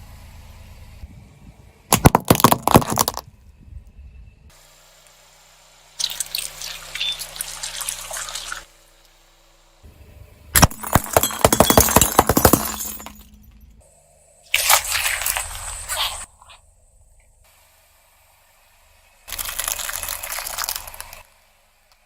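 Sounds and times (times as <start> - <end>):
objects crackling and popping when crushed: 1.9 - 3.3, 19.3 - 21.2.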